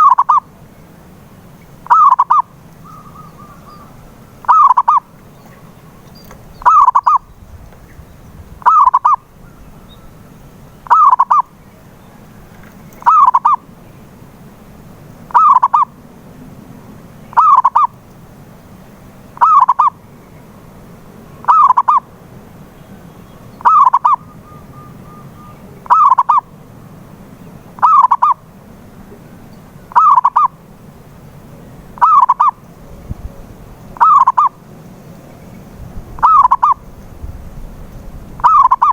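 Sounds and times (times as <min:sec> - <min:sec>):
dove cooing: 0:00.0 - 0:00.5, 0:01.8 - 0:07.4, 0:08.6 - 0:10.2, 0:10.8 - 0:13.7, 0:15.3 - 0:16.0, 0:17.3 - 0:18.0, 0:19.4 - 0:20.0, 0:21.4 - 0:22.1, 0:23.6 - 0:26.5, 0:27.8 - 0:28.4, 0:29.9 - 0:30.6, 0:32.0 - 0:32.6, 0:34.0 - 0:34.6, 0:36.2 - 0:37.0, 0:38.4 - 0:38.9.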